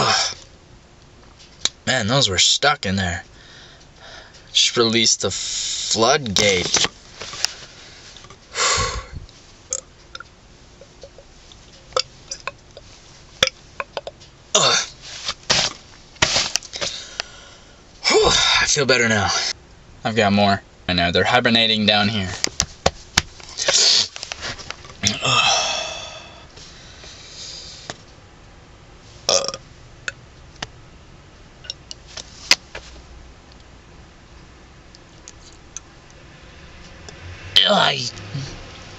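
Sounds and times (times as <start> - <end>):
man burping: 0.0 - 0.4, 8.6 - 9.9, 12.0 - 12.6, 13.8 - 15.0, 18.0 - 18.7, 25.0 - 26.4, 29.3 - 29.6.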